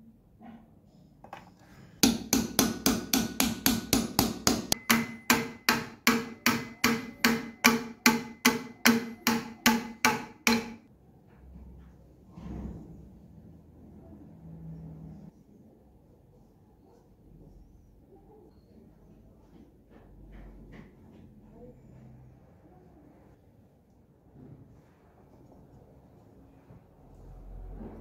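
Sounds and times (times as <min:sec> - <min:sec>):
hammer striking metal: 0:02.0 - 0:10.9.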